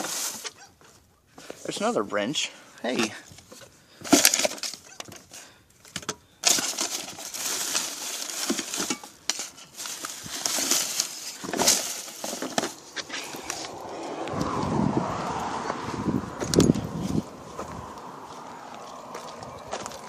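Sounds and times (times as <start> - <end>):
rustling and scraping: 0.0 - 2.0, 2.9 - 14.7, 15.6 - 20.0.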